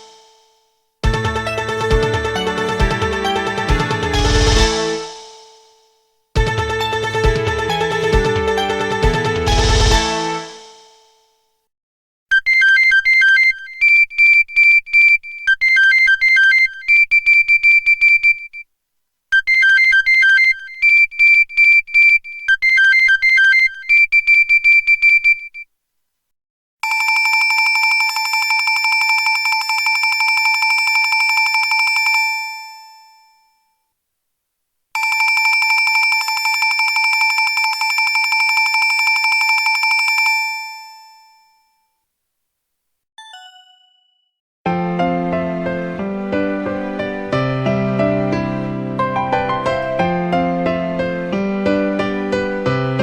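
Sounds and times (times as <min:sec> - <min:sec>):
phone ringtone melody: 0:01.0 - 0:05.4, 0:26.8 - 0:33.5, 0:35.0 - 0:41.8, 0:43.2 - 0:44.3
fast-pulsing electronic ring tone: 0:26.8 - 0:33.2, 0:35.0 - 0:41.6.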